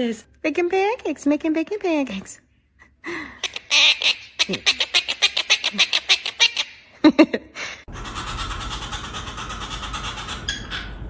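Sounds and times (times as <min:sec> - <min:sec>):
parrot squawking and chattering: 0:03.4 - 0:07.0, 0:07.9 - 0:11.0.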